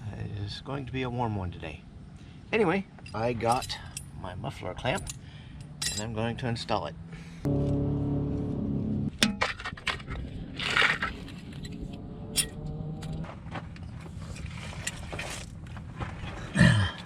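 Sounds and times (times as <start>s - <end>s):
metal parts clinking and scraping: 3.0s - 4.2s, 4.8s - 6.2s, 9.2s - 13.2s, 13.8s - 15.6s.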